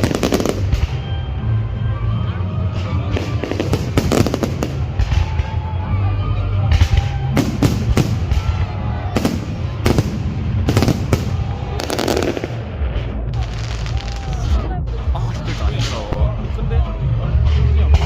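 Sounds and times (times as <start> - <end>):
fireworks bangs: 0.0 - 1.2, 2.7 - 5.7, 6.6 - 14.6.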